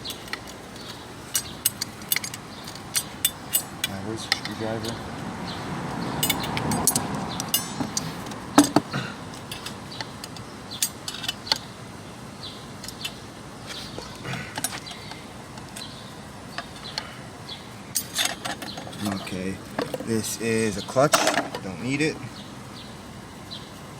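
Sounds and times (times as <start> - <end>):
metal clicks and clinks: 0.0 - 5.0, 6.2 - 11.7, 12.8 - 13.2, 17.9 - 20.2
screwdriver scraping metal plates: 16.6 - 17.1, 17.9 - 20.2.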